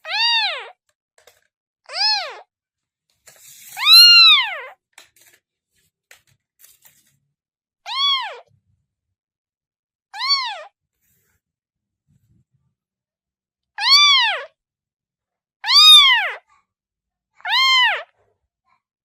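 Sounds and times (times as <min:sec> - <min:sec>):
kitten meowing: 0:00.0 - 0:00.8, 0:01.9 - 0:02.5, 0:03.8 - 0:04.8, 0:07.9 - 0:08.5, 0:10.2 - 0:10.7, 0:13.8 - 0:14.5, 0:15.7 - 0:16.4, 0:17.5 - 0:18.1.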